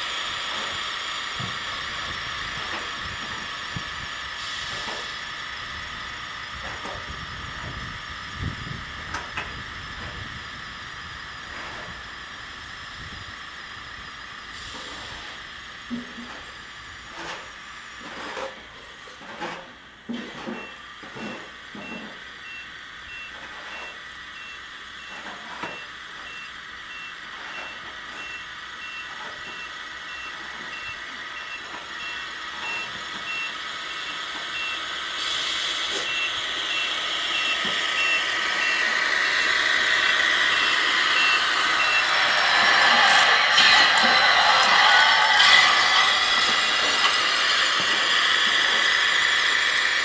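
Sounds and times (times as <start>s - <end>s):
hiss: 0.0s - 6.0s, 14.2s - 17.8s, 32.8s - 50.0s
high electronic beep: 36.0s - 38.9s, 40.5s - 42.7s.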